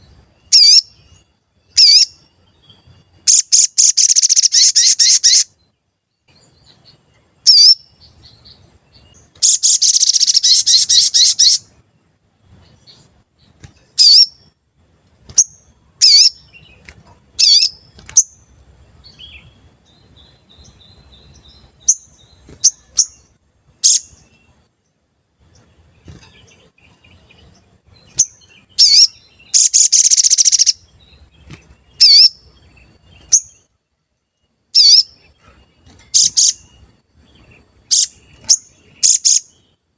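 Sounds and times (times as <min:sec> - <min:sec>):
bird trills: 0:00.0 - 0:05.6, 0:06.5 - 0:11.7, 0:13.7 - 0:14.5, 0:15.3 - 0:18.5, 0:19.1 - 0:24.6, 0:26.0 - 0:33.7, 0:34.7 - 0:39.8
songbird chirps: 0:00.0 - 0:39.9.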